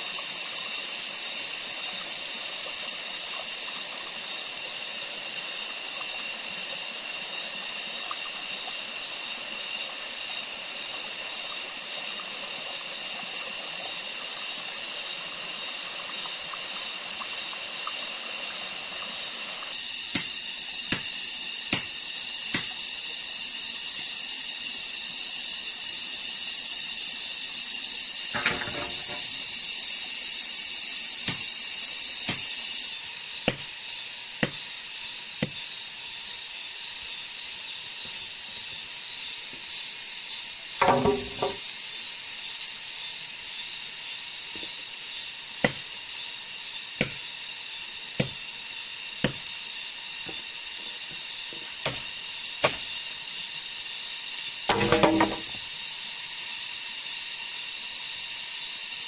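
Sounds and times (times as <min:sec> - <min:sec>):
rainforest insect chorus: 0:00.0 - 0:59.0
sharp knocks: 0:40.8 - 0:41.6, 0:54.7 - 0:55.6.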